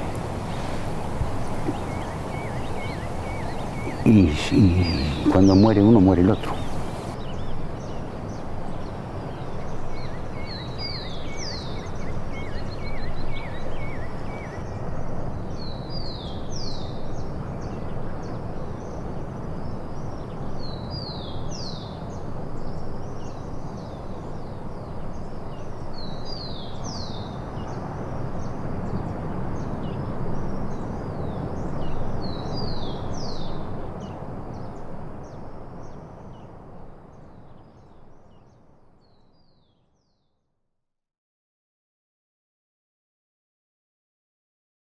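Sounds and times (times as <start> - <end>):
bird chirping quickly: 0.0 - 7.2
songbird whistling phrase: 0.0 - 7.2
steady rushing background noise: 0.0 - 7.2.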